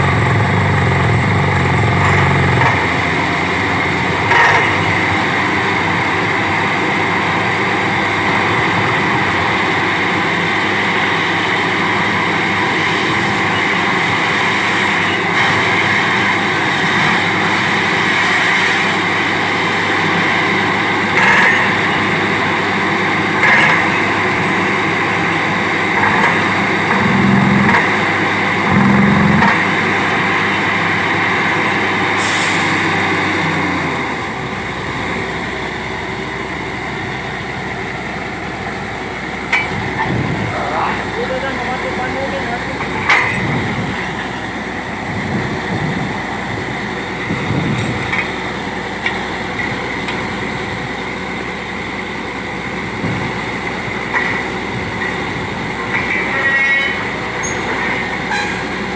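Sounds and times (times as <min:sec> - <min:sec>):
drilling rig running: 0:00.0 - 0:58.9.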